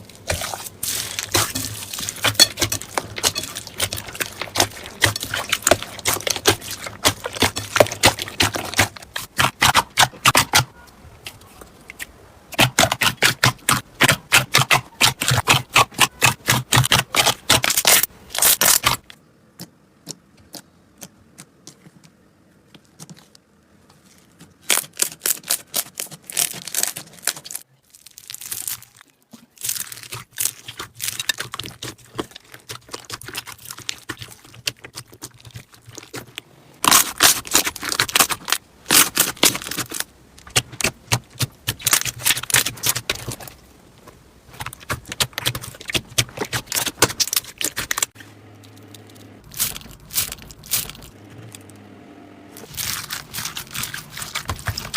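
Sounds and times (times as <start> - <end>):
slime crackling and popping: 0.0 - 10.6, 24.6 - 43.6, 44.5 - 48.2, 49.5 - 51.2, 52.6 - 54.9.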